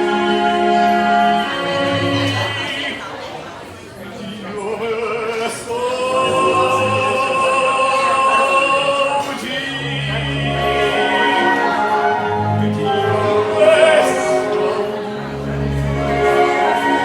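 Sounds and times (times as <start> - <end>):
person singing long notes: 5.7 - 17.0.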